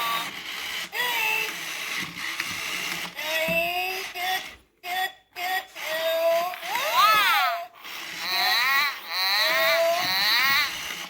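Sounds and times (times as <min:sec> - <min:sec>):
toy motor and gears running: 0:00.0 - 0:11.0
toy electronic voice chattering: 0:03.1 - 0:11.0.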